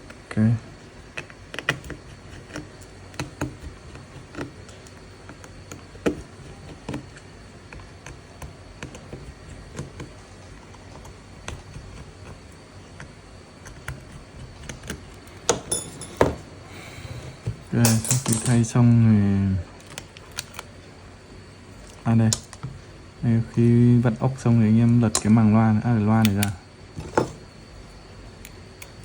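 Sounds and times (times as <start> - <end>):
low steady hum: 0.0 - 29.0
small tools tapping on phone parts: 14.6 - 16.4, 17.4 - 18.6.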